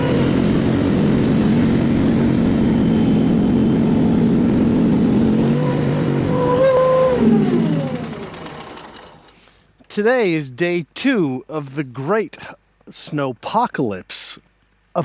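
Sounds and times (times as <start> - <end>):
engine running steadily: 0.0 - 9.6.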